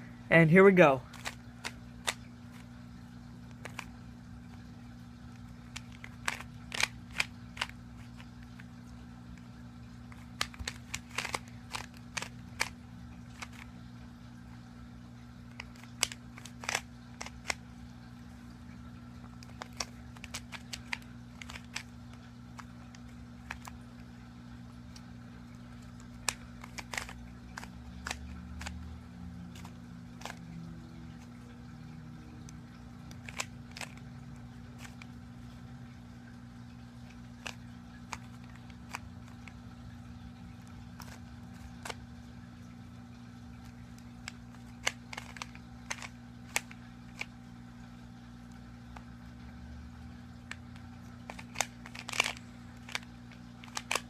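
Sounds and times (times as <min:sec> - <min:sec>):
steady low hum: 0:00.0 - 0:54.0
puzzle cube clicking: 0:01.1 - 0:02.7, 0:03.5 - 0:04.0, 0:05.4 - 0:08.8, 0:10.0 - 0:13.8, 0:15.5 - 0:17.6, 0:19.2 - 0:23.9, 0:24.9 - 0:28.8, 0:29.5 - 0:30.5, 0:33.1 - 0:35.2, 0:37.0 - 0:39.7, 0:40.6 - 0:42.0, 0:43.6 - 0:47.4, 0:50.5 - 0:54.0.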